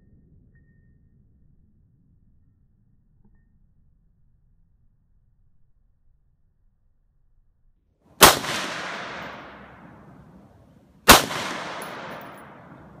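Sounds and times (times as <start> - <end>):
rifle shots with echo: 8.2 - 13.0.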